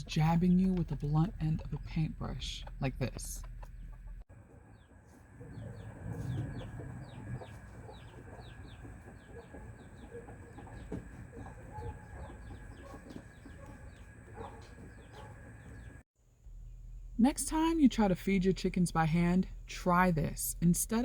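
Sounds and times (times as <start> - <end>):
chickens clucking softly: 1.2 - 15.9.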